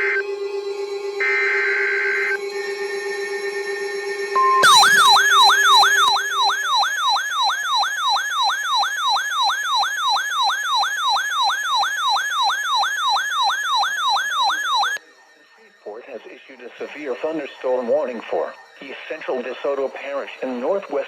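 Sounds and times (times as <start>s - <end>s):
short steady beep: 4.4s - 7.5s.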